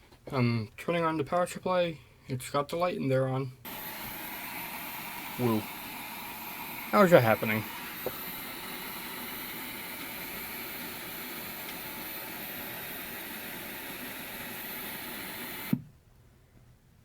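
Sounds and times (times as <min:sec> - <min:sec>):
electrical hiss: 0:03.7 - 0:15.8.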